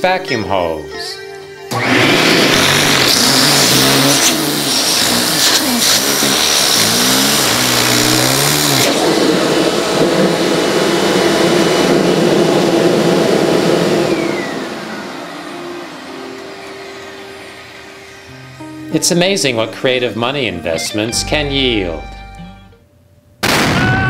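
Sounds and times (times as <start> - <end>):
vacuum cleaner running: 1.6 - 19.0.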